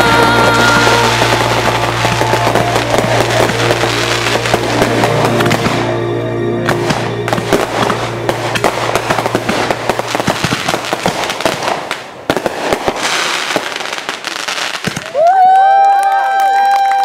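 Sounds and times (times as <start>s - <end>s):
fireworks crackling and popping: 0.0s - 6.0s, 6.6s - 17.0s
music with held low notes: 0.0s - 11.0s.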